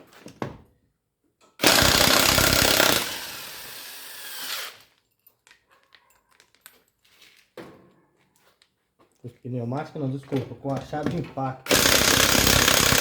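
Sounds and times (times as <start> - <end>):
electric impact wrench hammering: 1.6 - 4.8, 11.7 - 13.0.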